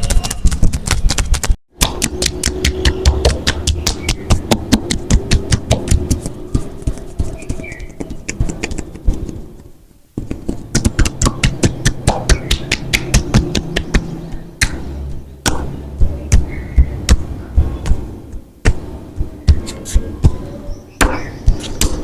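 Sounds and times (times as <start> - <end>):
hands slapping skin: 10.2 - 15.7.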